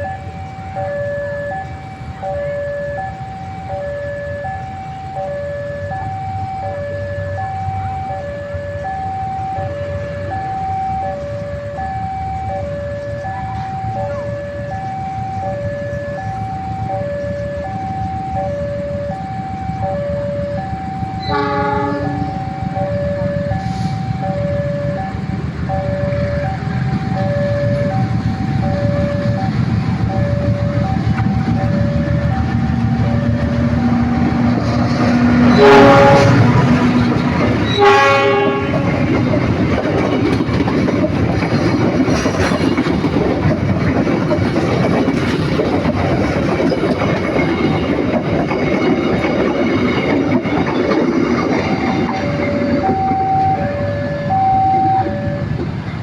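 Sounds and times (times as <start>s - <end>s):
low train rumble: 0.0s - 56.0s
train horn blast: 21.2s - 24.3s, 33.2s - 39.3s.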